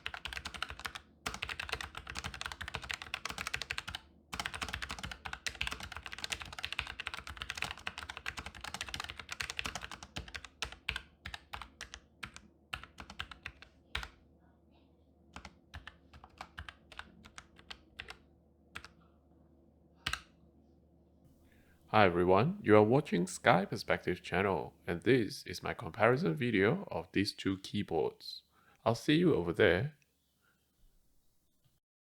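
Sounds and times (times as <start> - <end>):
computer keyboard typing: 0.0 - 14.2, 15.4 - 18.2, 18.8 - 19.0, 20.1 - 20.3.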